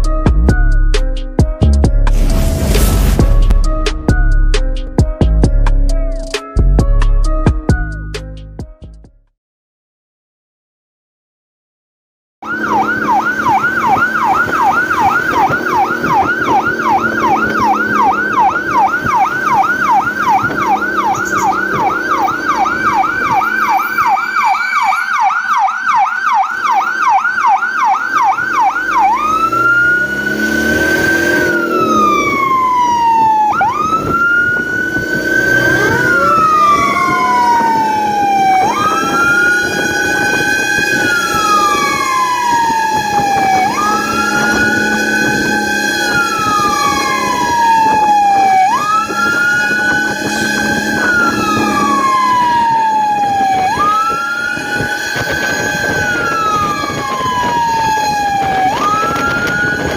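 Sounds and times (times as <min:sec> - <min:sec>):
fire truck siren: 0:12.4 - 0:59.9
second wailing siren: 0:12.4 - 0:59.9.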